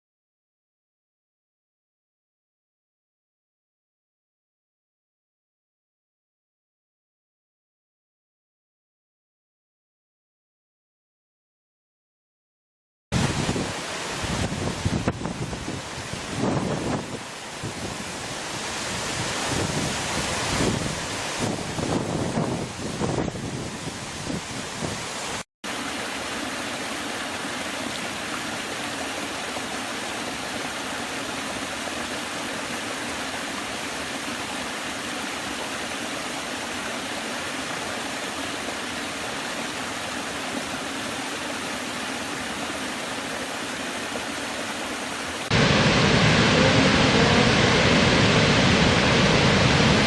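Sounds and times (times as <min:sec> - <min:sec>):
falling water rushing: 0:13.2 - 0:50.0.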